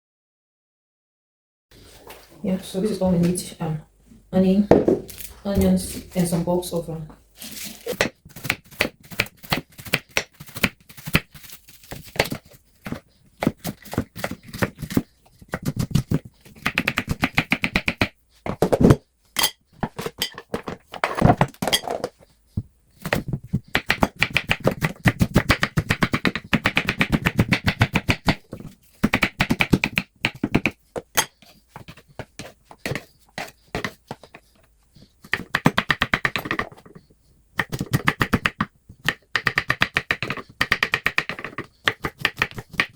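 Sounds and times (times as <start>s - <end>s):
knife chopping on cutting board: 7.9s - 11.3s, 12.2s - 18.1s, 23.0s - 28.4s, 29.0s - 34.2s, 37.6s - 42.9s.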